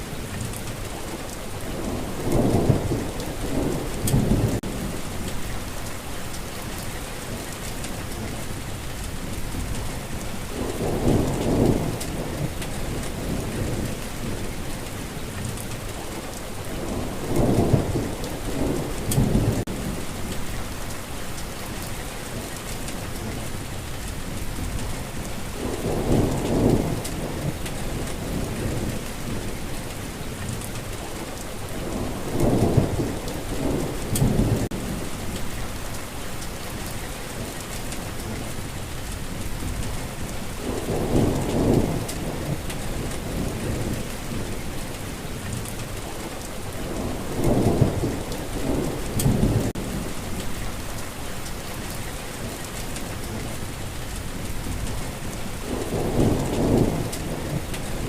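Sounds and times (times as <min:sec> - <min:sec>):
steady rainfall: 0:00.0 - 0:58.0
low rolls of thunder: 0:01.6 - 0:05.6, 0:09.4 - 0:15.8, 0:16.6 - 0:20.6, 0:24.4 - 0:31.0, 0:31.6 - 0:35.9, 0:39.3 - 0:51.0, 0:52.7 - 0:58.0.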